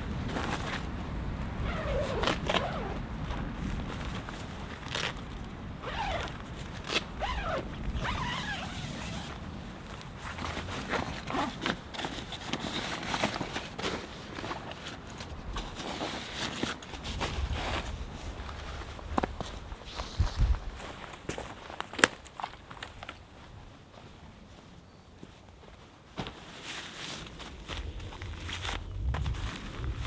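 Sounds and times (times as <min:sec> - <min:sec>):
nylon gear zips and swishes: 0:01.6 - 0:03.0, 0:05.8 - 0:09.4, 0:10.2 - 0:13.9
steady low rumble: 0:27.1 - 0:30.0.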